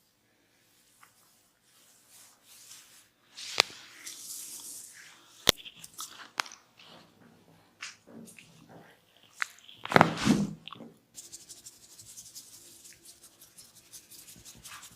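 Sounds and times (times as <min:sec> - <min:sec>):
hands rubbing through hair: 0:00.8 - 0:06.4, 0:11.2 - 0:14.9.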